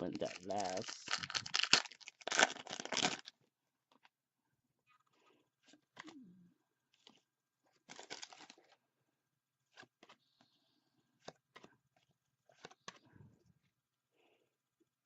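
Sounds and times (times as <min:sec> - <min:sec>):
wrapper tearing and crinkling: 0:00.0 - 0:03.3, 0:07.8 - 0:08.7
cards clicking and rustling: 0:11.2 - 0:13.0.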